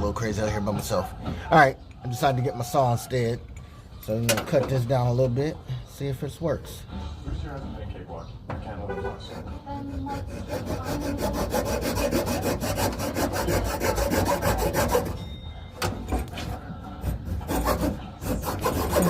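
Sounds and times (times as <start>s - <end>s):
hand saw cutting: 9.3s - 15.2s, 16.1s - 19.0s.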